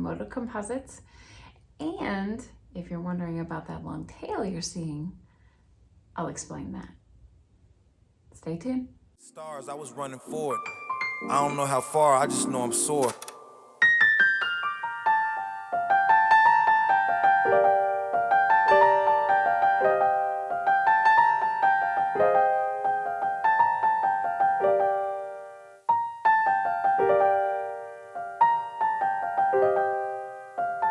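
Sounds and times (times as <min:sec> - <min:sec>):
solo piano melody: 0:10.0 - 0:30.9.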